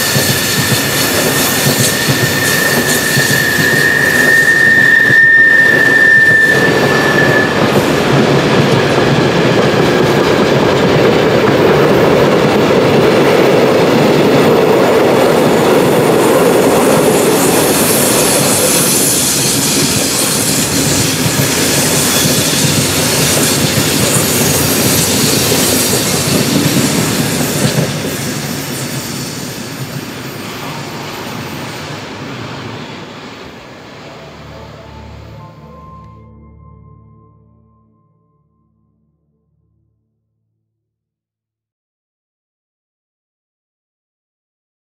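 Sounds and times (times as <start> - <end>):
high wheel squeal: 0.0 - 9.2, 16.6 - 32.0
freight train wheels clattering: 0.0 - 32.7.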